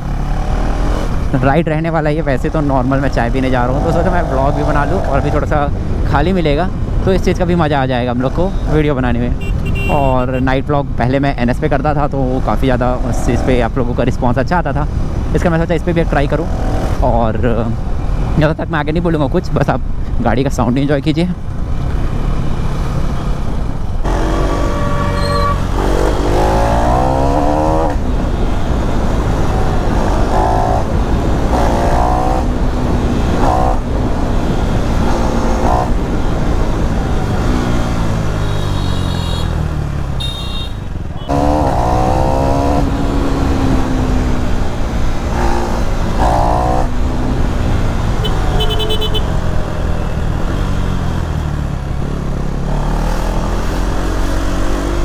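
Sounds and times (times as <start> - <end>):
motorcycle engine revving: 0.0 - 10.5, 12.2 - 18.5, 21.4 - 55.0
vehicle horn toots: 9.4 - 10.5, 24.2 - 26.8, 38.3 - 41.9, 48.2 - 50.3.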